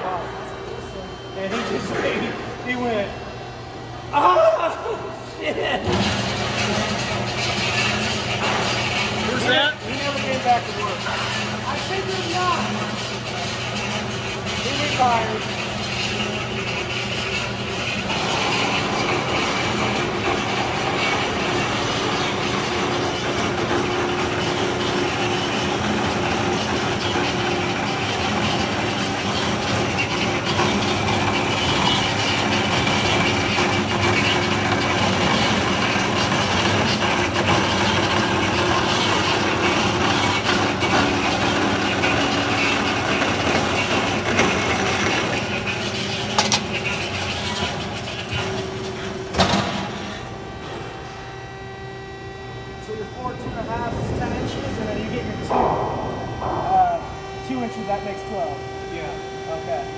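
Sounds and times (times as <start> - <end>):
machinery humming and hissing: 0.0 - 59.9
sharp knocks: 53.2 - 59.3.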